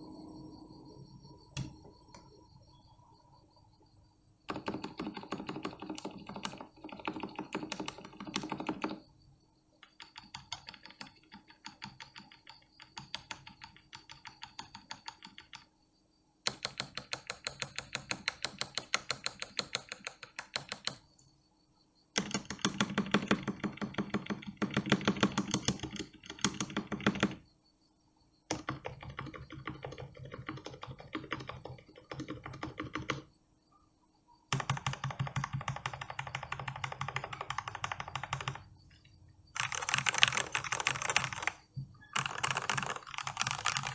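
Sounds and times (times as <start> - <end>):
mechanical keyboard typing: 4.5 - 9.0, 9.8 - 15.7, 16.5 - 21.0, 22.2 - 27.4, 28.5 - 33.3, 34.5 - 43.9.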